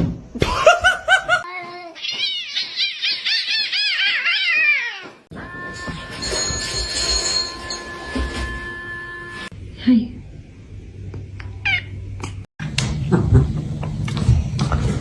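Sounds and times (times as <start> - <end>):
cat meowing: 1.9 - 5.3, 11.6 - 12.0
steady high-pitched tone: 5.3 - 9.6.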